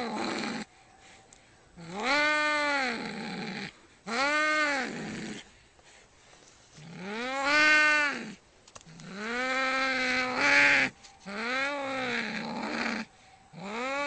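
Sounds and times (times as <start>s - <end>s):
angry cat yowling: 1.8s - 5.2s, 9.0s - 14.0s.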